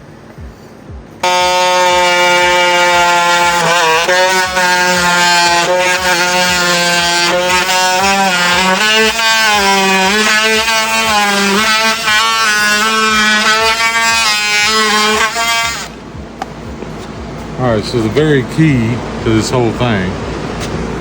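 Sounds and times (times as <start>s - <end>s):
oscillating multitool cutting wood: 1.2s - 16.0s.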